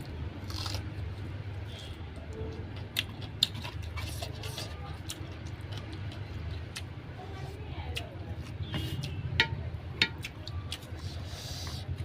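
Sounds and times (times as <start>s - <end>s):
person chewing food: 0.0s - 1.4s, 2.3s - 7.2s, 10.0s - 12.0s.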